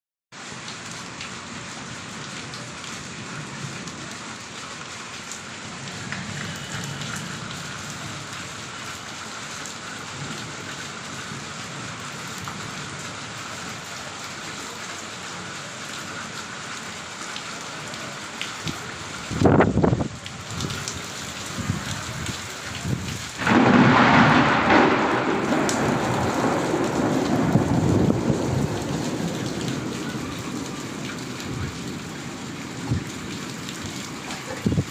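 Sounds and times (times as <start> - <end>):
steady rain falling: 0.3 - 34.9
long peal of thunder: 23.4 - 33.4
thunder crack: 23.4 - 33.4.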